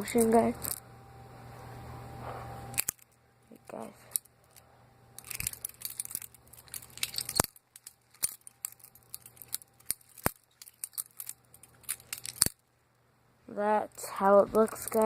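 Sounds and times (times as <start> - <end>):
butterfly knife handles clattering: 5.2 - 12.6, 14.6 - 15.0.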